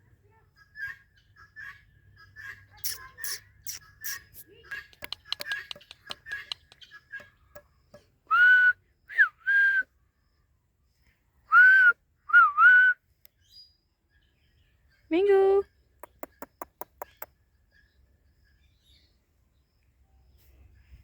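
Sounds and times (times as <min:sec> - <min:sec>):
parrot soft clicks and chirps: 0:02.8 - 0:07.4, 0:16.0 - 0:17.3.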